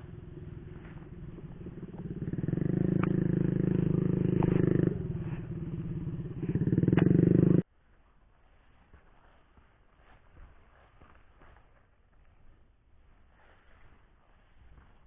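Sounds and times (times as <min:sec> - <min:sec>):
small petrol engine revving: 0:00.0 - 0:07.6.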